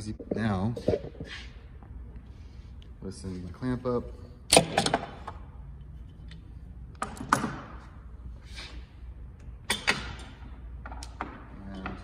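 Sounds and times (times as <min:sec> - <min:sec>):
clamps clicking and knocking: 0:09.7 - 0:12.0.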